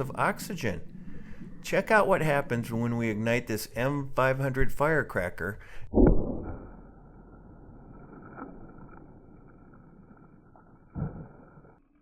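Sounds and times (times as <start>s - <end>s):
underwater firecracker thump: 5.9s - 6.8s, 10.9s - 11.8s.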